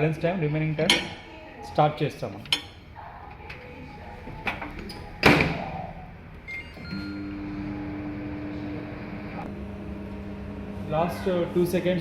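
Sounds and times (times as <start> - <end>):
microwave oven humming: 6.7 - 12.0.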